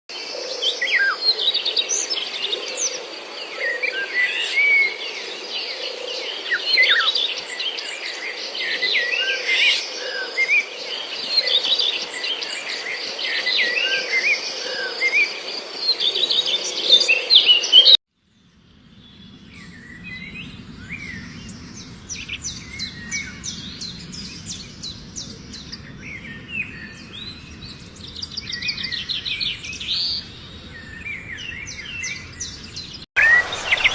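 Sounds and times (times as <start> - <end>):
small birds chirping and twittering: 0.3 - 33.9
bird trill: 33.2 - 33.9
steady hiss: 33.2 - 33.9
water flowing: 33.2 - 33.9.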